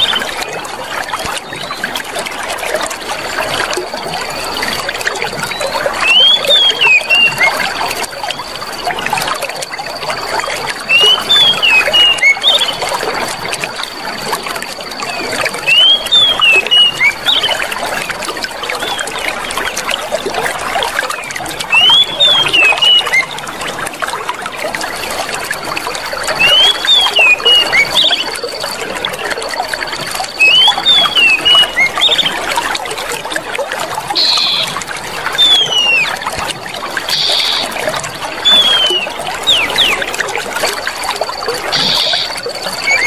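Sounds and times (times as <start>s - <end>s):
water trickling: 0.0s - 43.0s
bird chirping: 5.5s - 8.4s, 10.9s - 12.9s, 15.0s - 17.6s, 21.7s - 23.3s, 26.4s - 28.3s, 30.3s - 32.3s, 34.2s - 34.8s, 35.4s - 36.2s, 37.1s - 37.8s, 38.4s - 40.2s, 41.7s - 43.0s
thin high tone: 41.4s - 43.0s.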